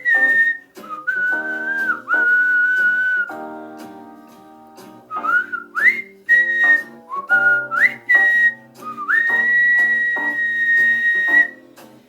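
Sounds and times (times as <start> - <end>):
person whistling a melody: 0.0 - 3.4, 5.1 - 11.7.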